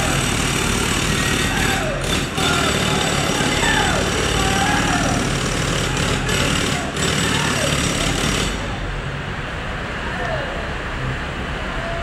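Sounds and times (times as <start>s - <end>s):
machinery engine running: 0.0s - 9.0s
construction noise: 0.0s - 12.0s.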